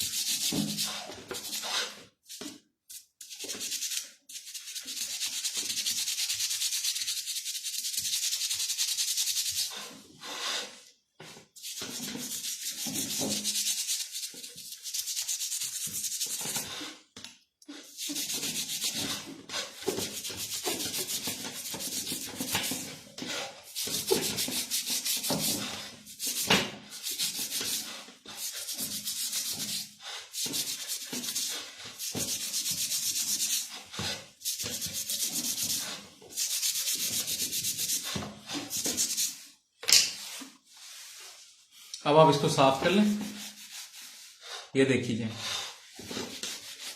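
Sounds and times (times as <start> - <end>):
hand scrubbing metal hub: 2.9 - 9.8, 11.6 - 16.6, 17.8 - 22.9, 23.6 - 39.5.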